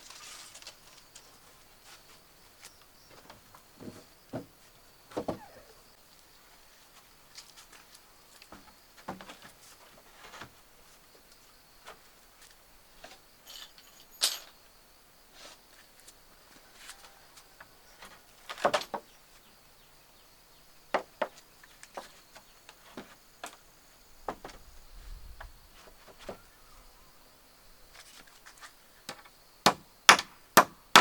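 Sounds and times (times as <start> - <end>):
high-pitched insect hum: 0.1 - 8.9.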